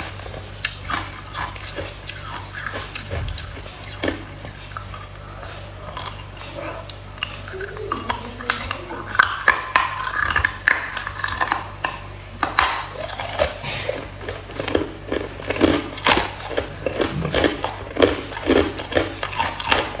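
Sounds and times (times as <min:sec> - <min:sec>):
ice being chewed: 0:00.0 - 0:20.0.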